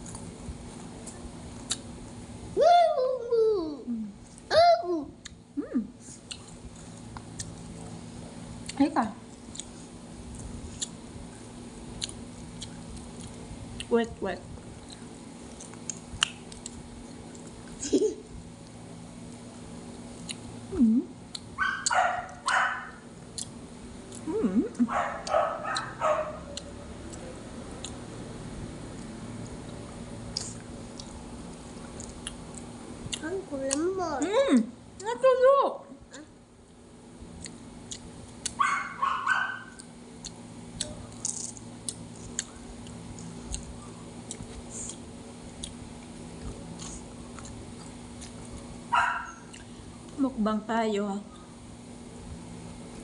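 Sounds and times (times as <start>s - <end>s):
steady low hum: 0.0s - 53.0s
small dog barking and yipping: 21.6s - 23.0s, 24.9s - 26.6s, 38.6s - 39.8s, 48.9s - 49.5s
dog whining: 24.9s - 26.6s, 48.9s - 49.5s.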